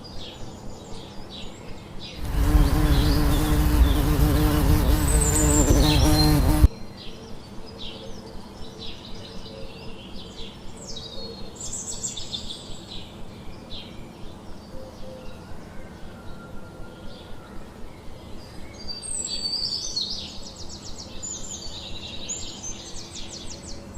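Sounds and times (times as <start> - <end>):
birds chirping and trilling: 1.0 - 6.7
loud buzz: 2.2 - 6.7.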